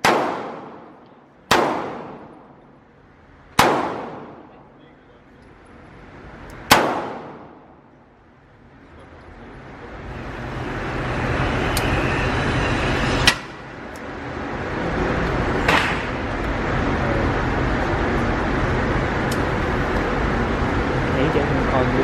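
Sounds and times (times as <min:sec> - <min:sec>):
gunshot cracks: 0:00.0 - 0:02.4, 0:03.6 - 0:04.5, 0:06.7 - 0:07.6, 0:15.7 - 0:16.2
steady rushing noise: 0:00.0 - 0:22.0.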